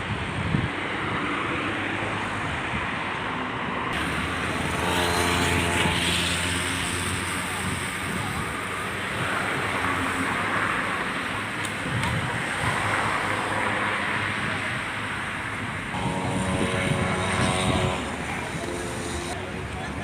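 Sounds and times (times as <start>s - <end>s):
road traffic passing: 0.0s - 20.0s
loud engine tone: 4.0s - 8.3s, 15.8s - 19.6s.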